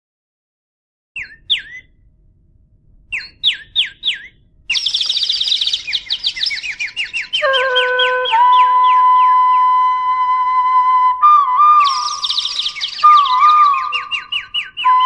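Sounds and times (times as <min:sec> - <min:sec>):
bird chirps: 0:01.2 - 0:02.0, 0:03.1 - 0:09.7, 0:11.8 - 0:15.0
held flute-like tone: 0:05.9 - 0:15.0
music track: 0:07.4 - 0:15.0.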